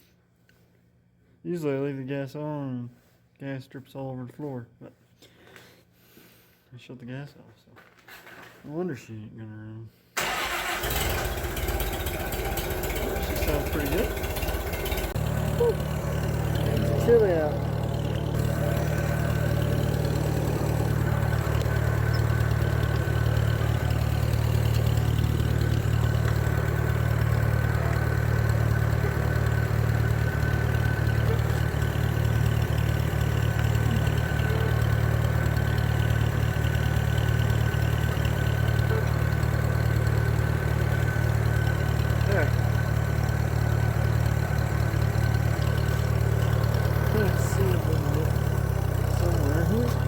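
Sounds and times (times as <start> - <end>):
tractor engine running: 10.2 - 50.0.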